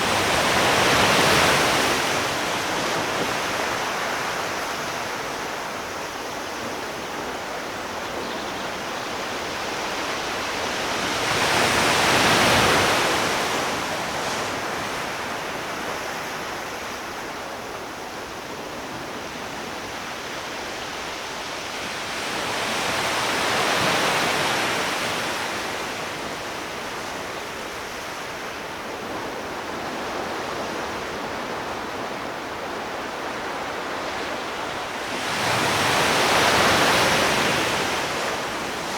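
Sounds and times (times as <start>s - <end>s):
sea waves washing onto shore: 27.6s - 38.9s.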